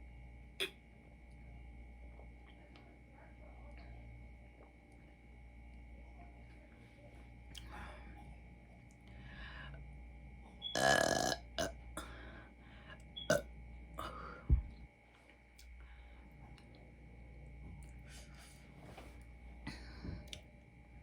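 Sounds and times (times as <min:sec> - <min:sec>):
woman burping: 0:10.7 - 0:11.7.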